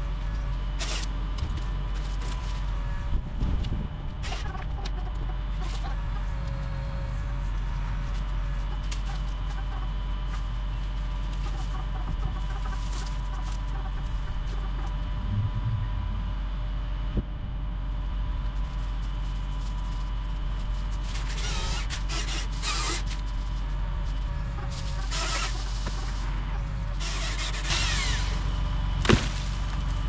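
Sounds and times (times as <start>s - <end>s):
chickens clucking: 4.3s - 6.6s, 8.6s - 15.1s
low rumble: 14.0s - 20.0s.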